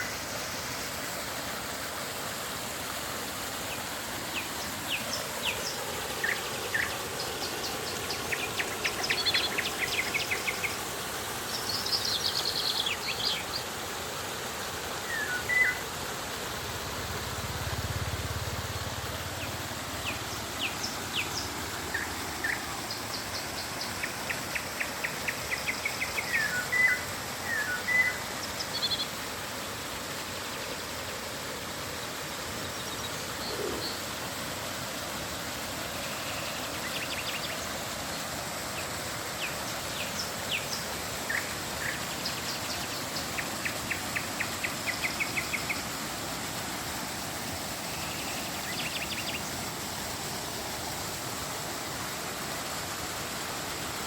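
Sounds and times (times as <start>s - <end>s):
flowing river water: 0.0s - 54.0s
birds chirping: 4.3s - 10.9s, 19.3s - 28.2s.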